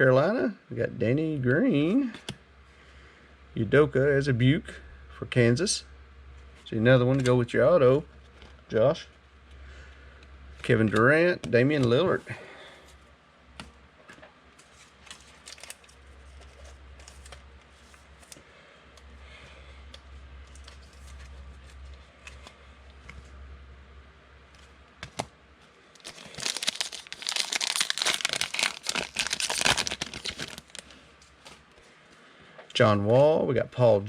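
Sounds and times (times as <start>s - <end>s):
card wrapper crinkling and tearing: 15.0s - 17.4s, 26.0s - 31.6s.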